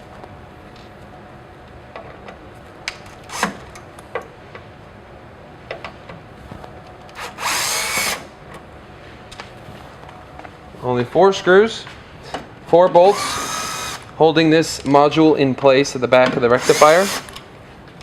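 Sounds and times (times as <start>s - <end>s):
cordless drill backing out screw: 7.2s - 8.2s, 13.1s - 14.1s, 16.6s - 17.4s.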